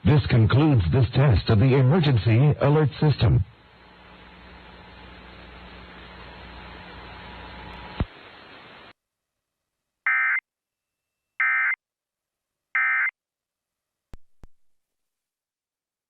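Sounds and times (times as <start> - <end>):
background hiss: 0.0 - 9.0.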